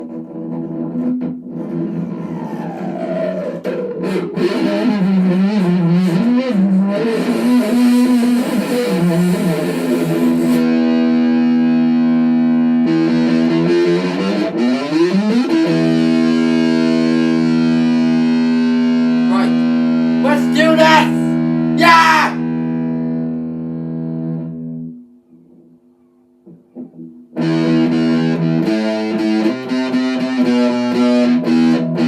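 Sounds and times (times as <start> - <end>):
distorted electric guitar: 0.0 - 25.8, 26.4 - 32.0.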